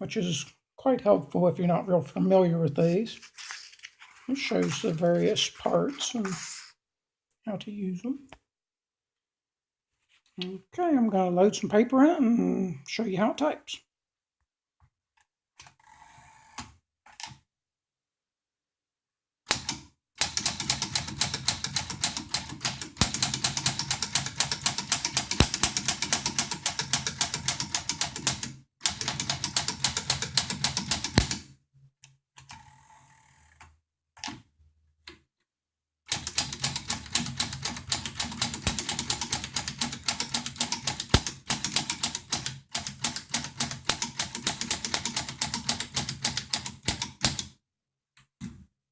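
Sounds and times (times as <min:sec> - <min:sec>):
typewriter key strikes: 0:19.5 - 0:31.4, 0:36.1 - 0:47.4.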